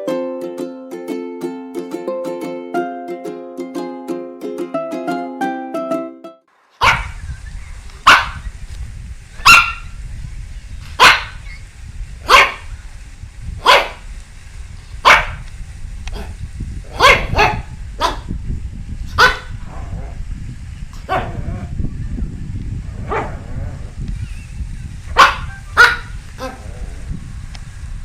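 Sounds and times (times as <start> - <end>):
dog barking: 6.8 - 7.2, 8.0 - 8.4, 9.4 - 9.9, 11.0 - 11.4, 12.3 - 12.7, 13.6 - 14.0, 15.0 - 15.4, 16.9 - 18.3, 19.1 - 19.6, 21.1 - 21.4, 23.1 - 23.4, 25.1 - 26.6
steady low rumble: 6.8 - 28.0.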